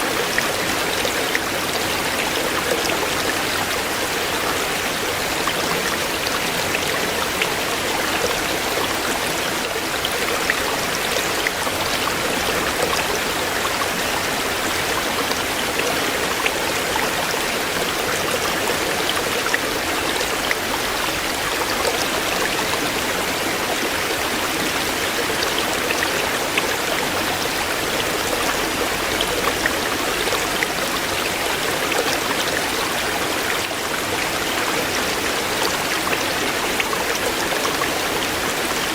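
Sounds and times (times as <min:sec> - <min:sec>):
stream flowing over stones: 0:00.0 - 0:38.9.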